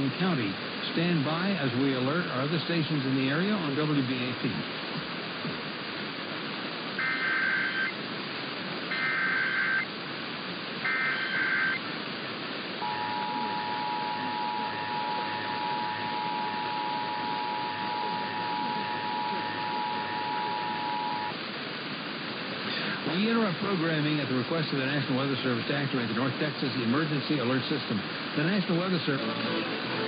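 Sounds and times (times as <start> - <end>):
radio static hiss: 0.0 - 30.0
two-tone attention signal: 7.0 - 7.9, 8.9 - 9.9, 10.8 - 11.8, 12.8 - 21.4
warbling digital data tones: 7.0 - 8.0, 8.9 - 9.9, 10.8 - 11.8, 12.8 - 21.4.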